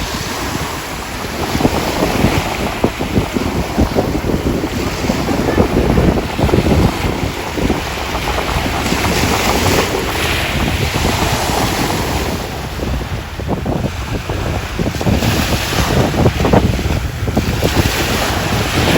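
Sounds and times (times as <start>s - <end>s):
waves washing ashore: 0.0s - 18.9s
wind buffeting microphone: 0.0s - 18.9s.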